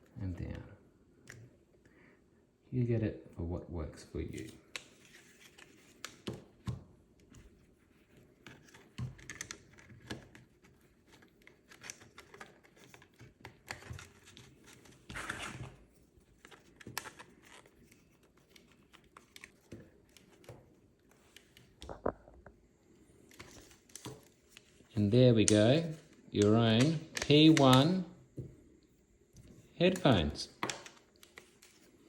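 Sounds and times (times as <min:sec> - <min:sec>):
plastic parts clicking and scraping: 0:08.1 - 0:15.7.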